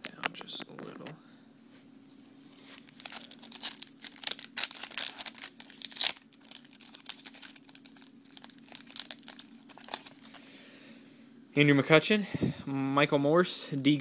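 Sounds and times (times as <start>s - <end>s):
plastic wrapper tearing and crinkling: 2.6s - 10.4s.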